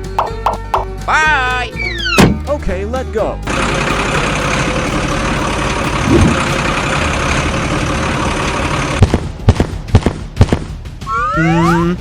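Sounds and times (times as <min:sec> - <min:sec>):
sharp knocks: 0:00.0 - 0:01.0, 0:01.9 - 0:02.6
vehicle engine rumbling: 0:00.0 - 0:11.8.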